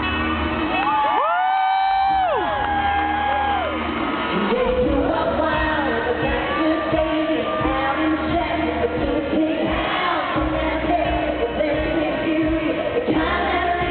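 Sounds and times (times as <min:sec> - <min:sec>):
woman singing country-pop live: 0:04.3 - 0:13.9.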